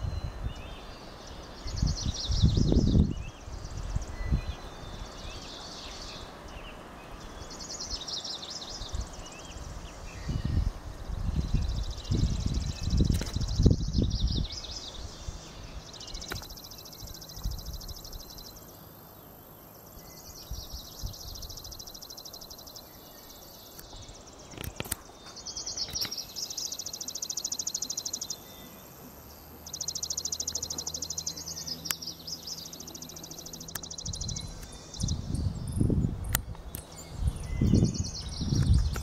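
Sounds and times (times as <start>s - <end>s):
songbird trilling: 11.4s - 39.0s.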